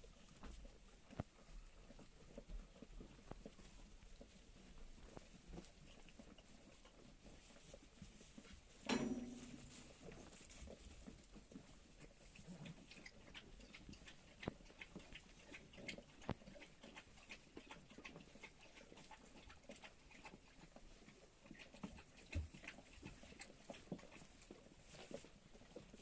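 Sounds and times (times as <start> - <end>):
animals munching straw: 0.0 - 26.0.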